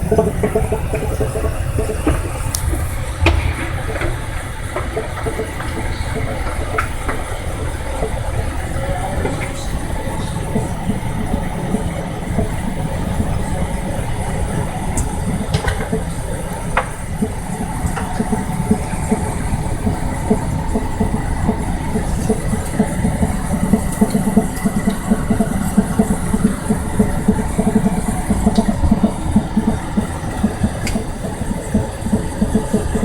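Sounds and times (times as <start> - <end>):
steady low rumble: 0.0 - 13.5.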